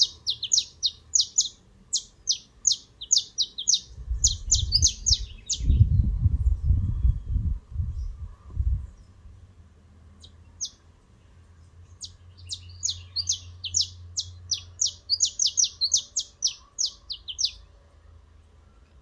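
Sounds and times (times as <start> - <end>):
canary chirping: 0.0 - 5.8, 12.0 - 17.7.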